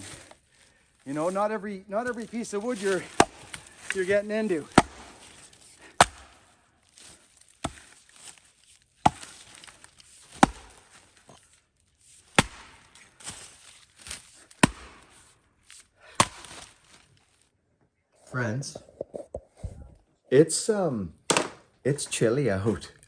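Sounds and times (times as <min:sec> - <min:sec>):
axe chopping wood: 0:02.8 - 0:06.5, 0:07.6 - 0:08.4, 0:09.0 - 0:11.4, 0:12.4 - 0:13.5, 0:14.1 - 0:15.2, 0:16.2 - 0:16.8, 0:21.3 - 0:21.6.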